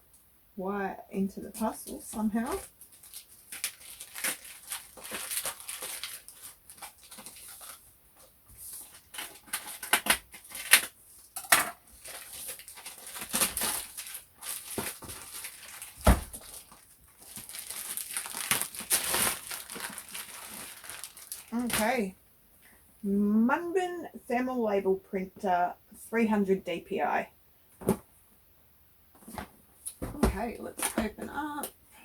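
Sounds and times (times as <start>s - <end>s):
packaging rustling and ripping: 2.6s - 22.0s
heavy thump: 30.0s - 31.3s.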